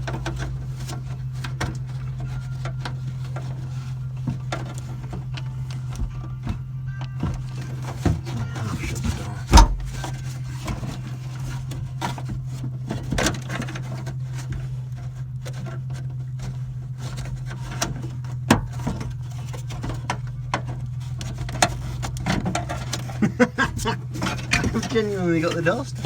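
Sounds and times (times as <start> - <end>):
clicks and knocks at car door: 0.0 - 11.0
steady low hum: 0.0 - 26.0.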